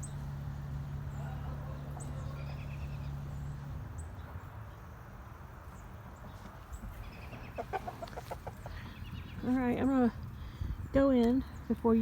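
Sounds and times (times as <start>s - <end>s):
low wind rumble: 0.0s - 12.0s
chickens clucking: 6.3s - 9.6s.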